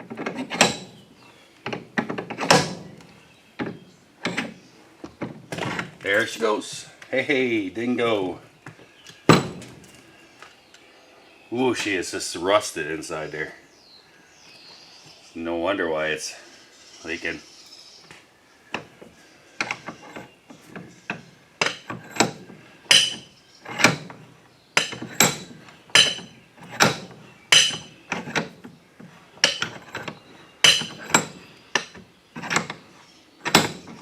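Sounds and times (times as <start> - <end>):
hammer striking metal wheel: 22.9 - 23.2, 24.8 - 27.9, 30.7 - 32.0.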